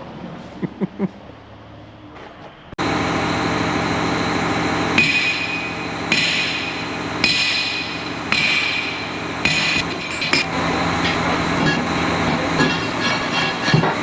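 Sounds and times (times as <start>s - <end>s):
hammer ringing on steel: 5.0s - 14.0s
engine running steadily: 9.8s - 14.0s.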